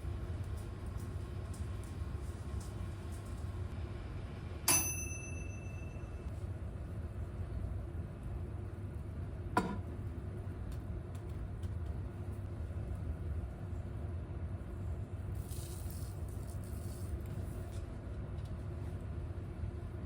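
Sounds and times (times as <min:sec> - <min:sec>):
range hood fan humming: 0:00.0 - 0:20.0
bright metallic clink: 0:04.7 - 0:06.2.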